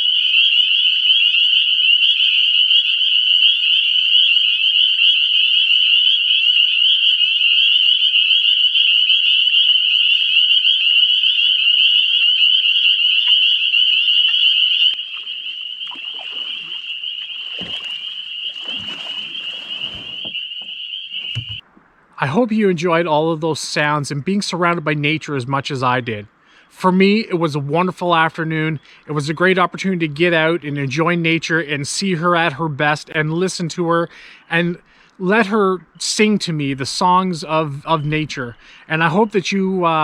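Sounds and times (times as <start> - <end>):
frogs trilling: 0.0 - 21.6.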